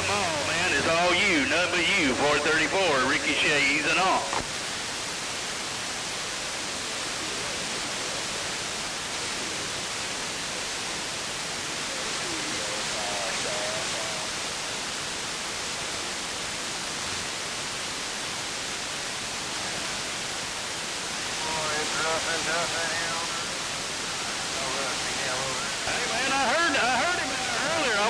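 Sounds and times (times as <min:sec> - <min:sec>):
distant voice over radio: 0:00.0 - 0:04.5, 0:12.0 - 0:14.5, 0:21.2 - 0:28.0
radio static hiss: 0:00.0 - 0:15.4, 0:19.5 - 0:28.0.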